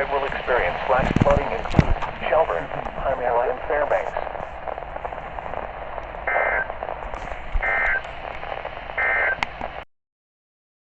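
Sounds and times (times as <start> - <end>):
radio static: 0.0 - 9.9
two-tone data squawks: 6.3 - 6.8, 7.6 - 8.1, 9.0 - 9.4.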